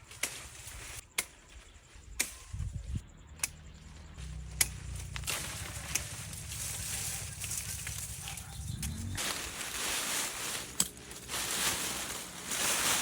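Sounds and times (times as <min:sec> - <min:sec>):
branches snapping: 0:04.4 - 0:13.0.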